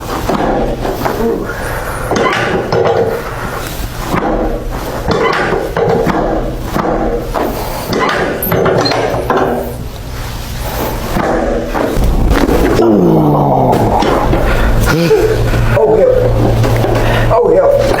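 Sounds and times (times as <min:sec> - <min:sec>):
steady low hum: 0:09.7 - 0:18.0
sharp thuds and cracks: 0:11.2 - 0:13.0.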